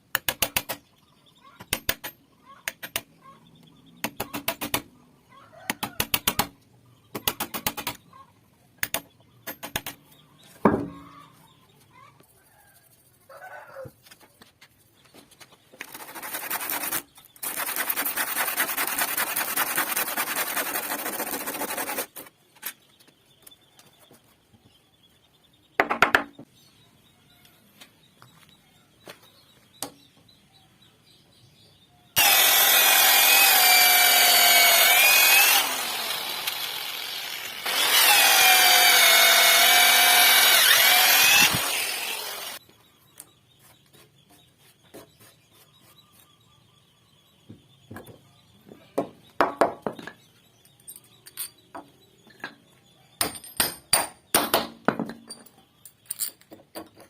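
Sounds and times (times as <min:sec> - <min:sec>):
sharp wooden knocks: 0:07.1 - 0:08.0, 0:08.8 - 0:10.0, 0:10.6 - 0:11.1, 0:25.8 - 0:26.5
power tool cutting wood: 0:32.2 - 0:42.6.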